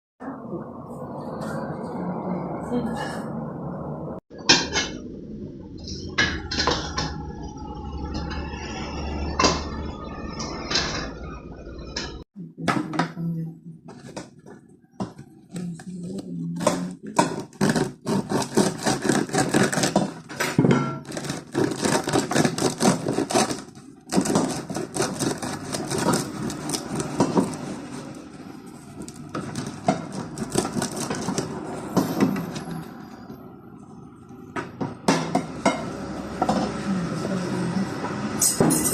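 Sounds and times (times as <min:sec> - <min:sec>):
bread crust crackling: 0:17.2 - 0:20.4, 0:21.0 - 0:31.6.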